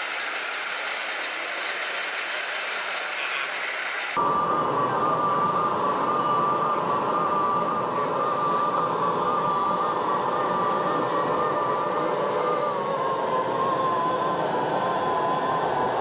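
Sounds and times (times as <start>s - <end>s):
high electric motor whine: 3.5s - 16.0s
loud hall background noise: 4.2s - 16.0s.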